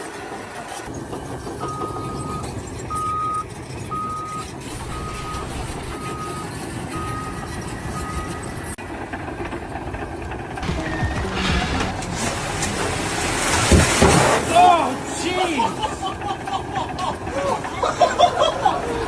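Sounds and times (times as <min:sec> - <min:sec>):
reversing alarm beeping: 0:01.7 - 0:08.6.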